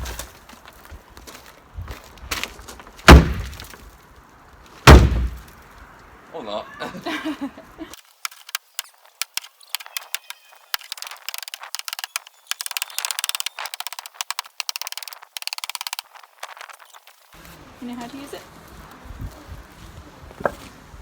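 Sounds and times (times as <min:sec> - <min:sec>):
sharp irregular clicks: 0:08.2 - 0:17.2
fast clicking rattles: 0:08.2 - 0:17.3.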